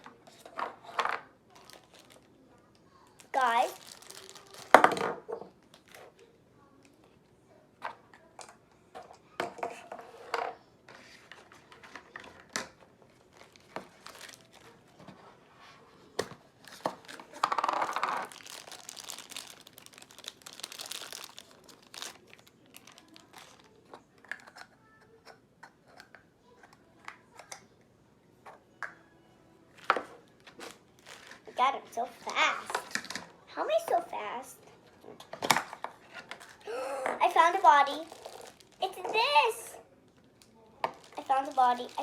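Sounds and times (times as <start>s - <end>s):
packaging tearing and crinkling: 1.5s - 2.3s, 3.2s - 4.9s, 13.3s - 14.8s, 16.6s - 23.8s, 30.4s - 31.5s, 37.9s - 39.3s, 40.9s - 42.0s.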